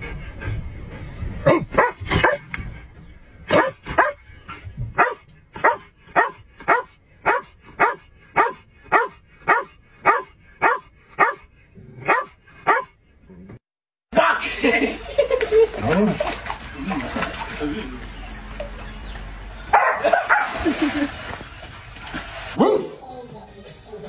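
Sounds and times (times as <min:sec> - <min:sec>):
dog barking: 0:01.4 - 0:02.4, 0:03.5 - 0:04.2, 0:05.0 - 0:13.0, 0:19.7 - 0:20.6, 0:22.6 - 0:23.0.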